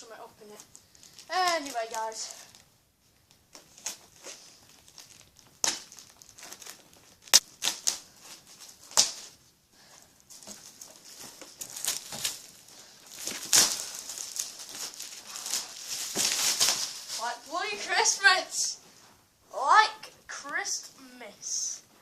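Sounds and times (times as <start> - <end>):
packaging rustling and crinkling: 0.5 - 9.5, 10.2 - 17.9.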